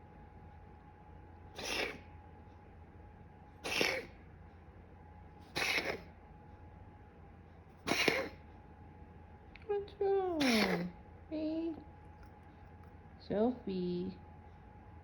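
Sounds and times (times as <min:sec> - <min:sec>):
cat coughing: 0:01.6 - 0:02.1, 0:03.6 - 0:04.2, 0:05.4 - 0:06.2, 0:07.8 - 0:08.4, 0:10.3 - 0:11.0.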